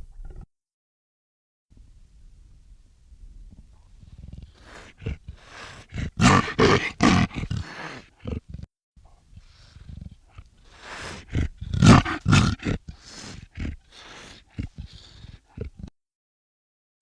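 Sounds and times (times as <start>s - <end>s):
leopard roaring: 4.1s - 8.5s, 9.4s - 15.8s.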